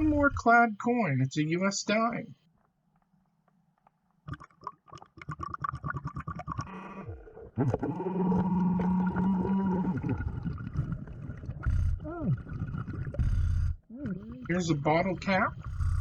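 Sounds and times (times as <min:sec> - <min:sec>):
underwater exhaled bubbles: 0:04.3 - 0:16.0.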